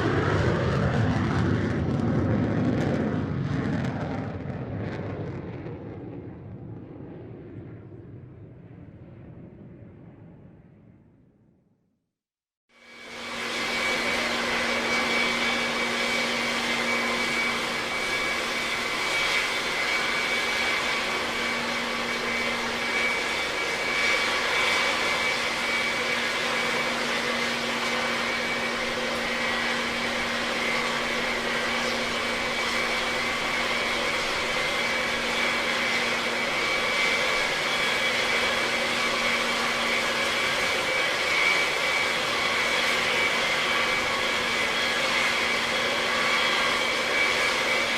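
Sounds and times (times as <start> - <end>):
high whine: 12.8 - 47.9.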